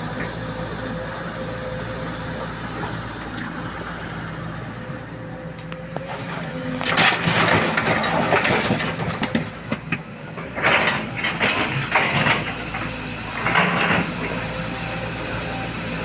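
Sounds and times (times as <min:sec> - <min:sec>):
excavator diesel engine running: 0:00.0 - 0:16.0
rock grinding and clattering: 0:05.9 - 0:10.0.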